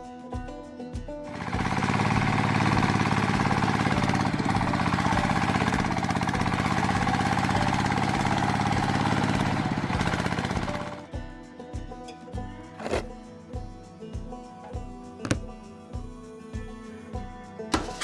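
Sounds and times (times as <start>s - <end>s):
small motor chugging: 1.3s - 11.1s.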